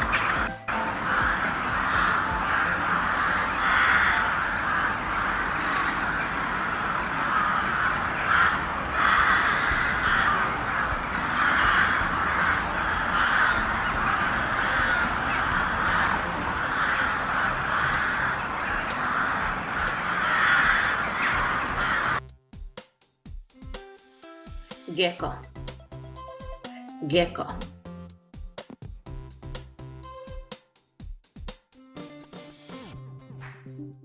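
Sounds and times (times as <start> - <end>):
crows cawing: 0.0 - 22.2.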